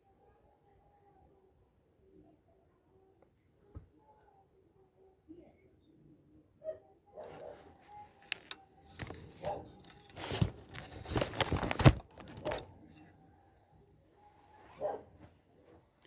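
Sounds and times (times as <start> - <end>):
rustling and crinkling: 7.2 - 13.4.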